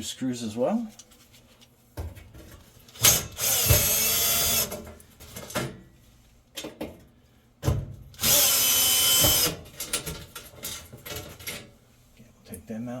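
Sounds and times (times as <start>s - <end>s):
cordless power driver running: 3.4s - 4.7s, 8.2s - 9.6s.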